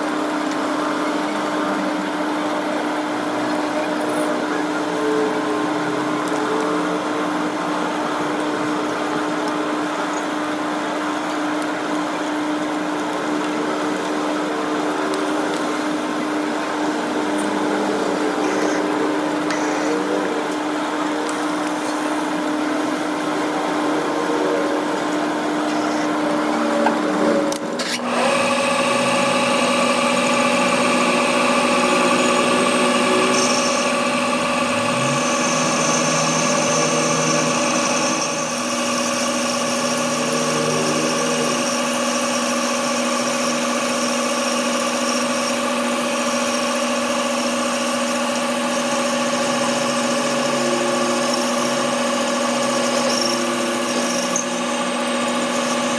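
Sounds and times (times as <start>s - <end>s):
electric motor humming: 27.8s - 55.9s.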